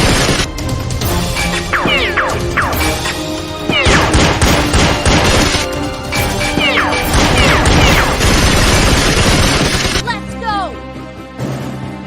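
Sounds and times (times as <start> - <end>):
gunfire: 0.0 - 0.5, 1.6 - 10.0
action background music: 0.0 - 12.0
impact sound effects: 1.6 - 5.5.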